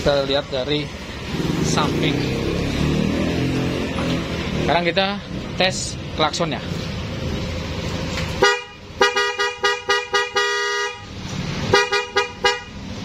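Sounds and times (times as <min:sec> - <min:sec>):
two-tone car horn honks: 0:08.4 - 0:11.1, 0:11.7 - 0:12.8.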